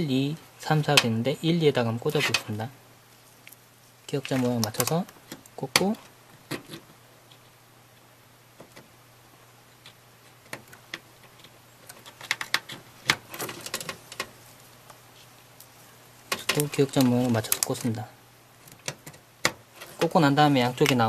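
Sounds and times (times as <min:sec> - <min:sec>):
faint steady hum: 0:00.0 - 0:21.0
plastic cable clicks and rattles: 0:10.4 - 0:14.3, 0:16.3 - 0:18.0.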